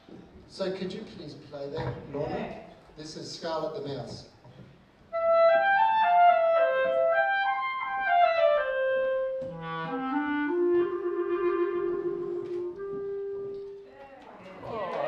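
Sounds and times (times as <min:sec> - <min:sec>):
solo clarinet melody: 0:05.1 - 0:13.8.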